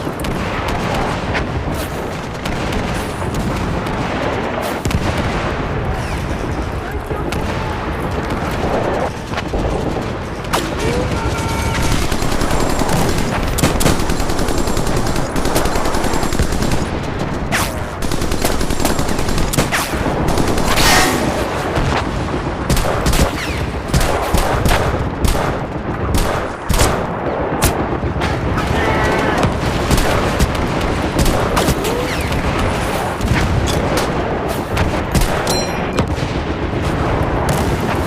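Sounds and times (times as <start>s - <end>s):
rapid gunfire: 0.0s - 38.0s
machine-gun fire: 7.9s - 38.0s.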